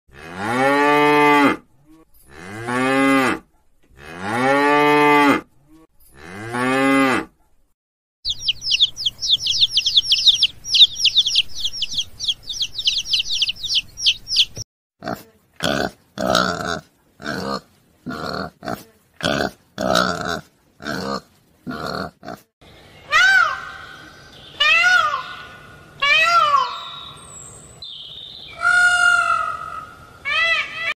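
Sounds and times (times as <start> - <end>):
rapid high chirping: 8.2 - 14.6
rising and falling animal calls: 8.3 - 14.6, 24.6 - 27.3, 28.5 - 30.9.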